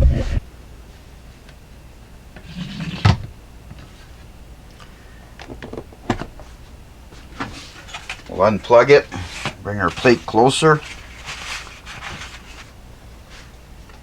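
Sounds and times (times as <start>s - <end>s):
rubbing scrape on counter: 10.8s - 12.7s.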